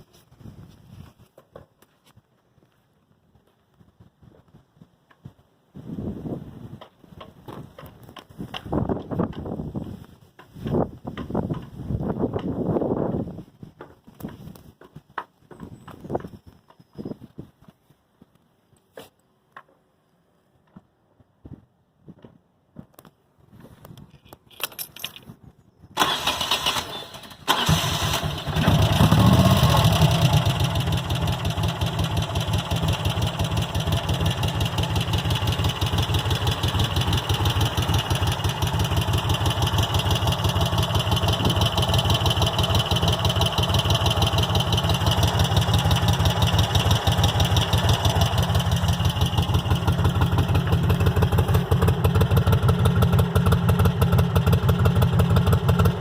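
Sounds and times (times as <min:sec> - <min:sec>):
motorcycle engine starting and idling: 0:26.0 - 0:56.0.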